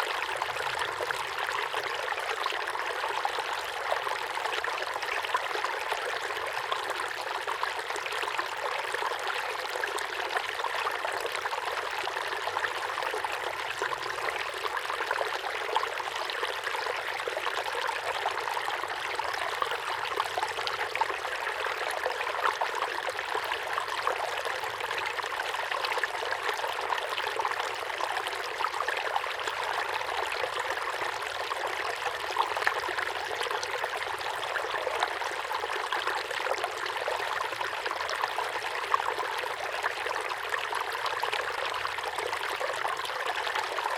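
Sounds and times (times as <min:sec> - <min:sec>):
small waterfall pouring into pond: 0:00.0 - 0:43.9.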